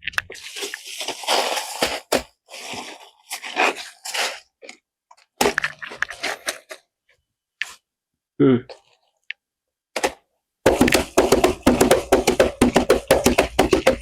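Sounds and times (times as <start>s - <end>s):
foley horse hooves: 10.7s - 14.0s.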